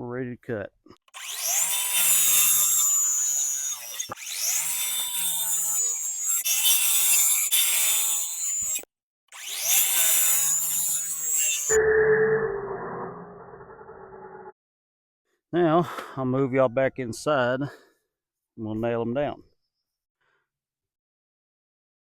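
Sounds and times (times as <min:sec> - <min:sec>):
circular saw cutting boards: 0:01.1 - 0:11.8.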